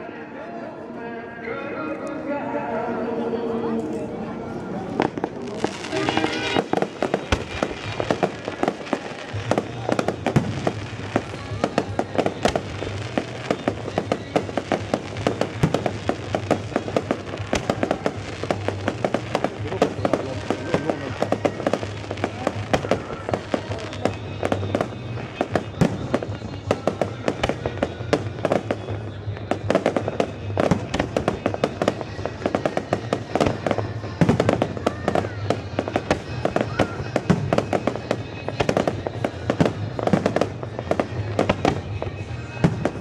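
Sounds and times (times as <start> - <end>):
music playing: 1.5 - 8.0
fireworks bangs and crackles: 3.1 - 43.0.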